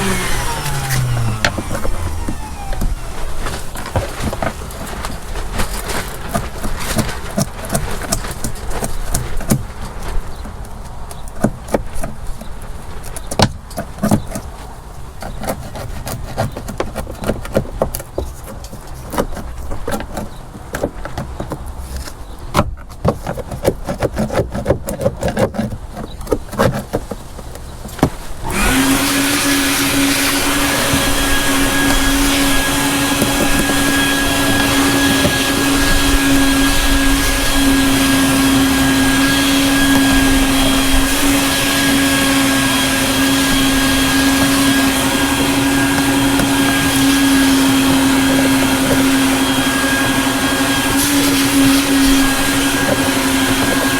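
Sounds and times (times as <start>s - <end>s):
electric motor humming: 0.0s - 5.1s, 28.4s - 53.9s
hand tool scraping and tapping: 0.0s - 53.9s.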